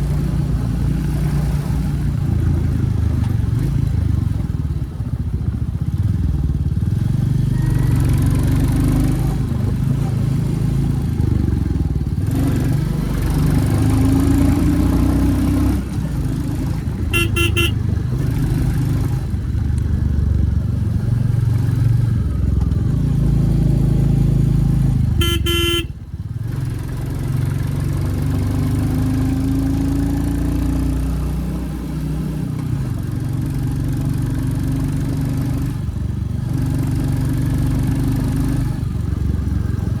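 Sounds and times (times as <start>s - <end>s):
motorcycle engine accelerating: 0.0s - 40.0s
vehicle horn toots: 17.1s - 17.8s, 25.2s - 26.0s.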